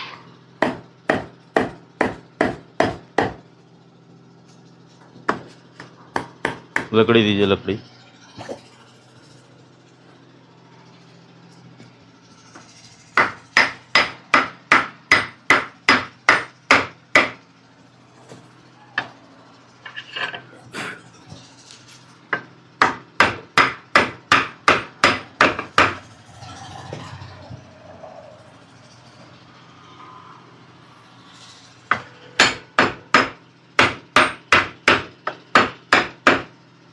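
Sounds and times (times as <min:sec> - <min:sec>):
hammer striking wood block: 0:00.6 - 0:03.4, 0:05.3 - 0:07.0, 0:13.2 - 0:17.4, 0:22.3 - 0:26.0, 0:31.9 - 0:36.5.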